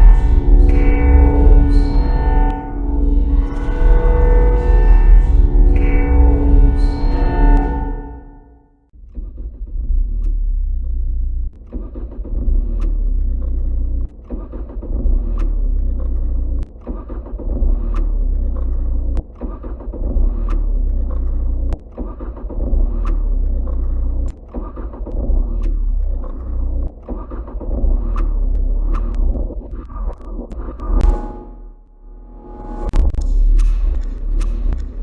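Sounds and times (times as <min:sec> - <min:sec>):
low engine-like rumble: 0:00.0 - 0:08.4.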